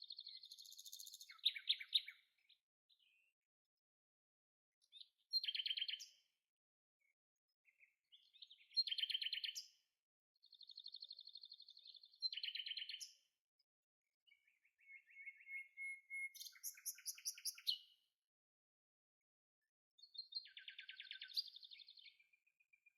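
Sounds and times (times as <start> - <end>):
songbird trilling: 15.1 - 17.7.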